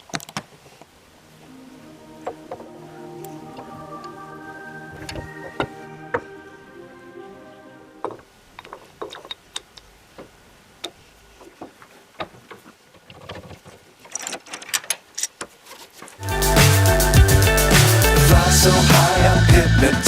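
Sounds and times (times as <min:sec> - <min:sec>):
loud music with a beat: 0:16.2 - 0:20.0.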